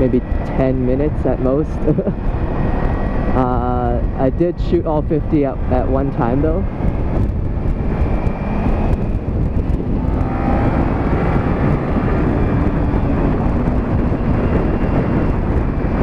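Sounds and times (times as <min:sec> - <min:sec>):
wind rush over helmet: 0:00.0 - 0:16.0
motorcycle engine running: 0:06.2 - 0:16.0.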